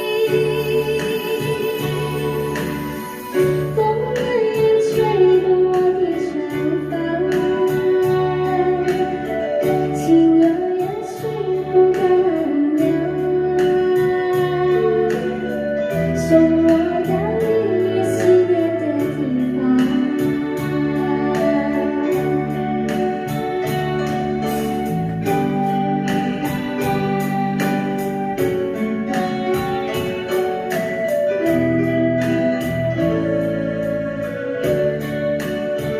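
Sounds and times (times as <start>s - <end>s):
gliding lead melody: 0.0s - 35.9s
sustained bass notes: 0.0s - 35.9s
steady beat: 20.2s - 35.9s.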